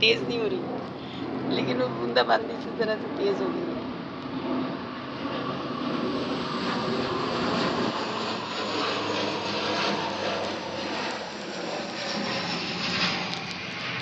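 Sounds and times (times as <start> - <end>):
steady rain falling: 9.8 - 14.0.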